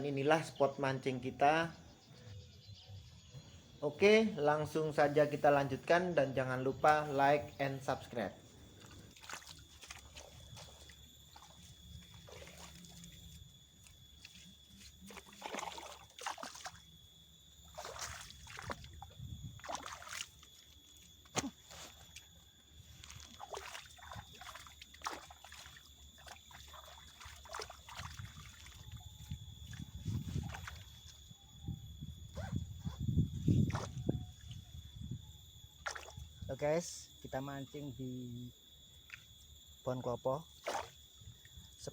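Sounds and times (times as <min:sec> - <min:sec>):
water lapping at shore: 0:08.5 - 0:31.3, 0:35.8 - 0:36.2, 0:40.5 - 0:41.6.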